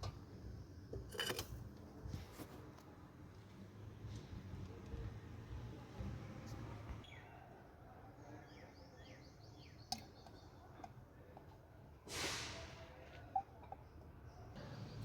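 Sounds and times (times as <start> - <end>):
short loud hiss: 12.1 - 13.0.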